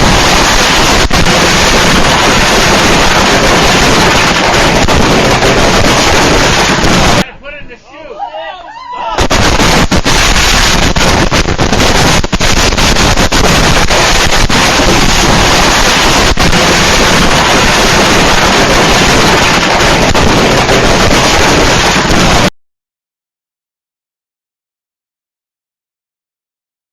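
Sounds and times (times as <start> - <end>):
fireworks crackling and popping: 0.0 - 7.3, 9.2 - 22.6.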